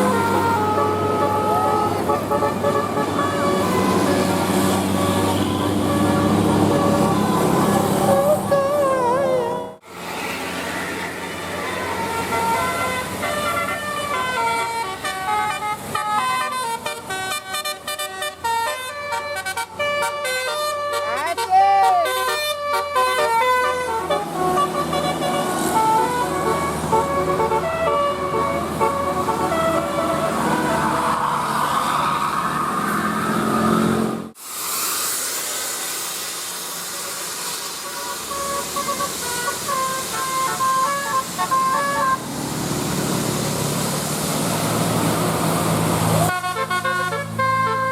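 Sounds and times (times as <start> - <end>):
musical bus horn melody: 0.0 - 9.8, 11.3 - 31.2, 37.8 - 42.4, 46.1 - 47.9
steady hiss: 34.4 - 41.5.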